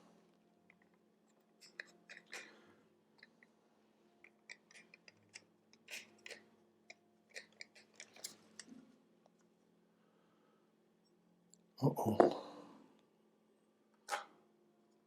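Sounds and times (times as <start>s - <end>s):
small parts and tools clicking: 1.6s - 2.6s, 4.2s - 8.7s.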